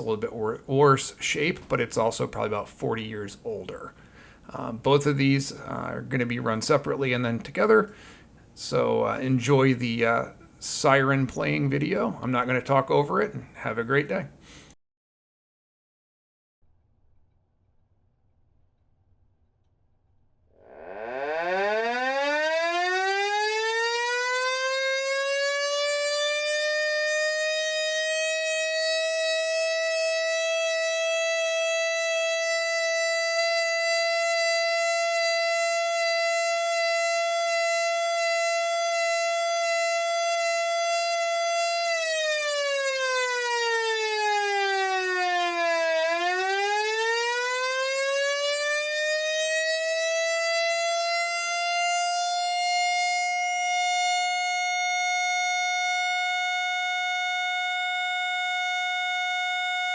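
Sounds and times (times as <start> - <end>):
mechanical siren wailing: 20.5 - 59.9.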